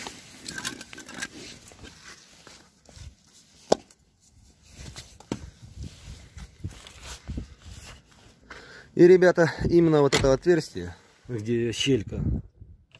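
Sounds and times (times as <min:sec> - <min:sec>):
clicks and rustles of handling: 0:00.0 - 0:04.0.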